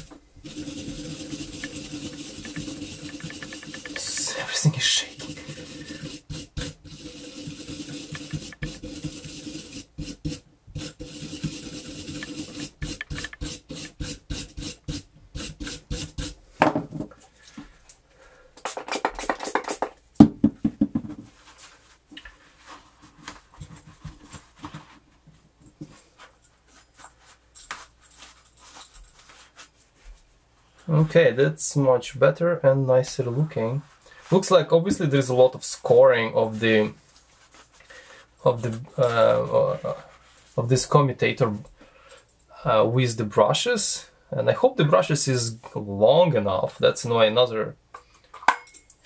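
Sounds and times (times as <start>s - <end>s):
brush scraping metal: 0.0s - 16.4s.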